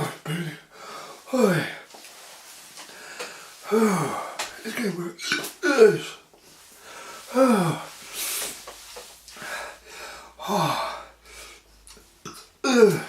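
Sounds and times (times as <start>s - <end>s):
man groaning: 3.7s - 4.3s, 5.6s - 6.2s, 7.3s - 7.9s, 10.4s - 11.0s, 12.6s - 13.0s
man sucking in hissing breaths: 6.6s - 10.3s.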